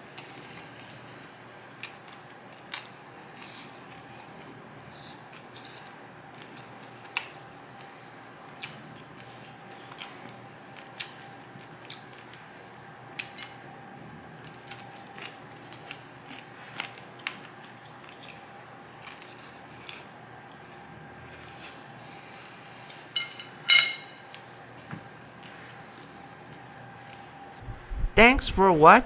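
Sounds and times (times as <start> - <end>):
utensils and tableware clicking: 23.1 - 24.2
ringing clink of tableware: 23.2 - 24.1.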